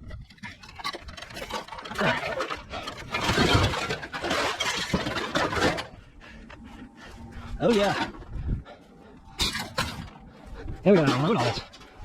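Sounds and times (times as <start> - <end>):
scrap metal clattering: 0.4 - 6.0.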